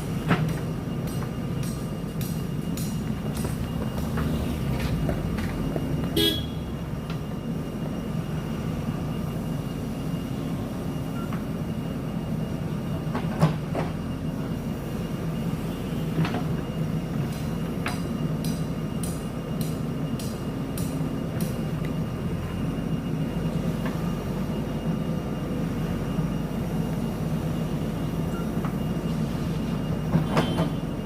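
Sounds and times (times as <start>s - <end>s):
diesel engine running: 0.0s - 13.3s.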